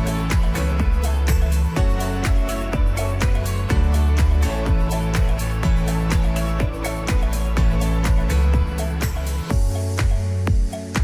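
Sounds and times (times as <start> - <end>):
electronic music with drum beat: 0.0 - 11.0.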